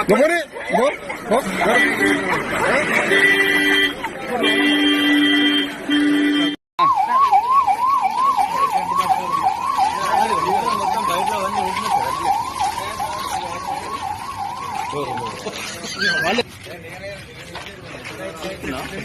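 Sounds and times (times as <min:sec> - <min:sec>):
ambulance siren wailing: 0:06.8 - 0:16.4.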